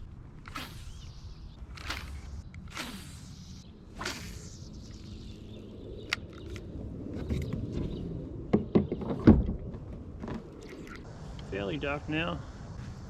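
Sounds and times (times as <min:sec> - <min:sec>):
wind rumble on microphone: 0:05.7 - 0:10.6.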